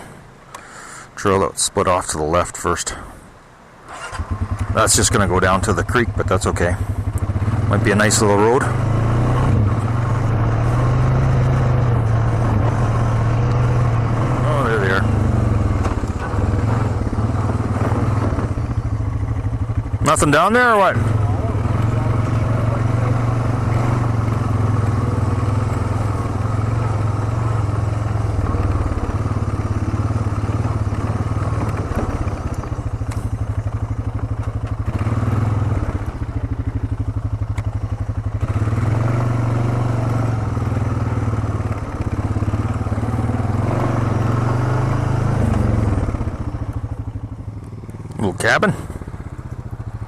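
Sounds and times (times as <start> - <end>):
atv engine running: 3.8 - 50.0.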